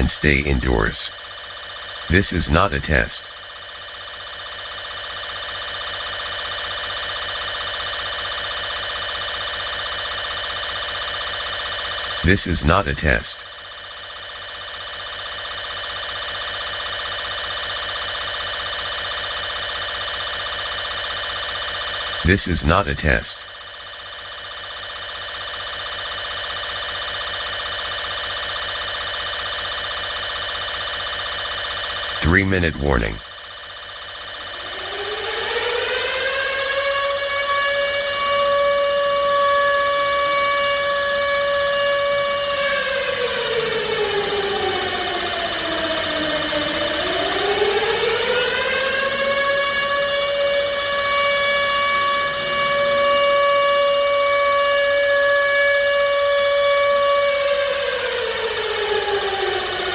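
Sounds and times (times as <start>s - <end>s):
civil defense siren wailing: 34.6s - 59.9s.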